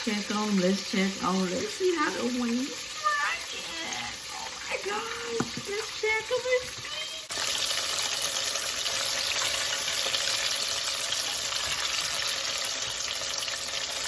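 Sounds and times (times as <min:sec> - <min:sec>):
chicken wings deep-frying in oil: 0:00.0 - 0:14.0.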